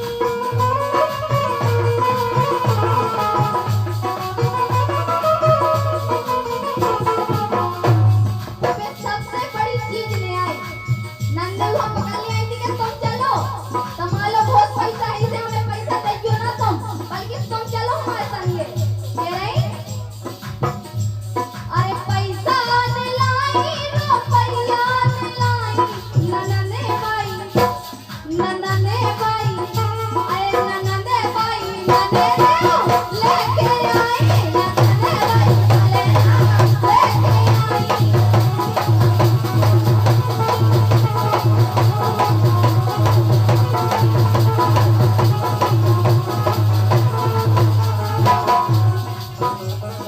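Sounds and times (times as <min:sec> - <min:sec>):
steady drum beat: 0:00.0 - 0:50.0
shaken rattles: 0:11.1 - 0:50.0.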